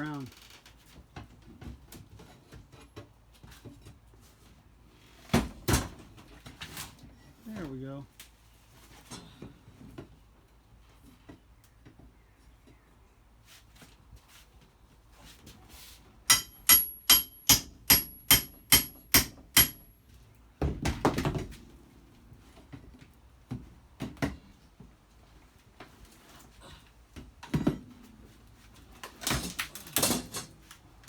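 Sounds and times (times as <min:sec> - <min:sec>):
hammer blows ringing: 0:16.3 - 0:19.9.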